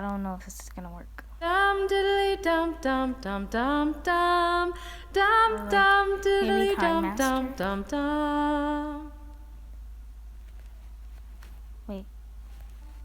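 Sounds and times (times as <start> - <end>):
high voice singing: 1.9 - 9.2.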